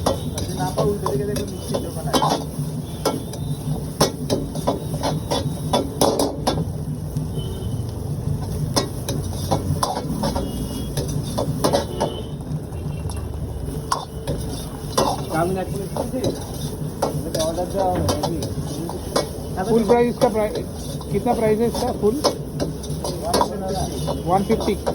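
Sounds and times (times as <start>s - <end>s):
metal spatula scraping a wok: 0.0s - 6.7s, 8.4s - 12.3s, 13.7s - 24.9s
food sizzling: 0.0s - 24.9s.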